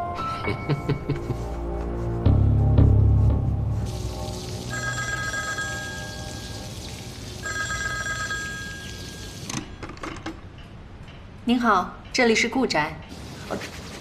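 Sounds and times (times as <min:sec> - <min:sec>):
telephone bell ringing: 0:04.6 - 0:06.7, 0:07.4 - 0:09.5.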